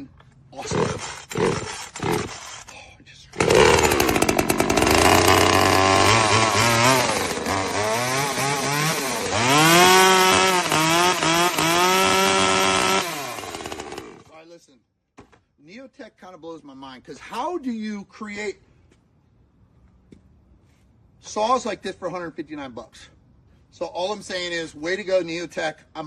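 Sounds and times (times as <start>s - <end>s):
chainsaw engine revving: 0.6s - 2.7s, 3.4s - 14.3s
chainsaw starter pulls: 0.6s - 2.8s, 3.4s - 14.3s.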